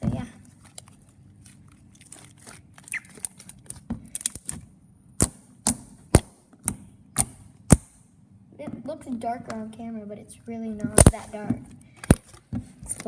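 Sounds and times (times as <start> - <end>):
slime clicking and popping: 2.0 - 4.6.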